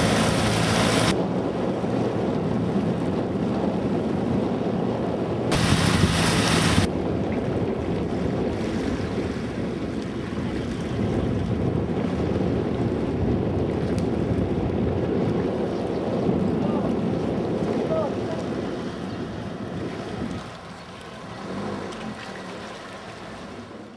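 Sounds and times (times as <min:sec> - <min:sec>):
water rushing: 0:00.0 - 0:01.2, 0:05.5 - 0:06.9, 0:16.6 - 0:23.9
wind rushing: 0:05.2 - 0:10.3.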